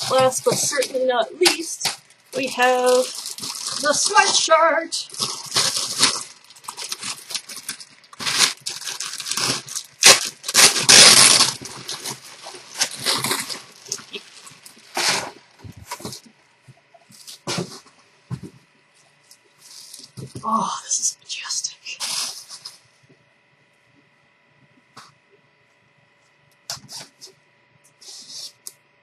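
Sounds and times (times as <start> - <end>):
packaging rustling and crinkling: 0.0 - 20.4.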